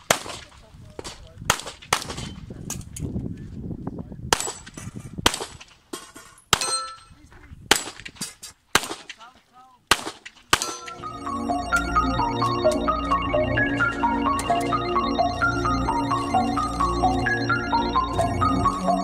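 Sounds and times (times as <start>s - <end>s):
handgun shots: 0.0s - 2.4s, 4.3s - 5.8s, 7.7s - 9.3s, 9.9s - 11.0s
steel targets clanging: 4.4s - 9.4s, 10.2s - 11.1s
music: 10.8s - 19.0s.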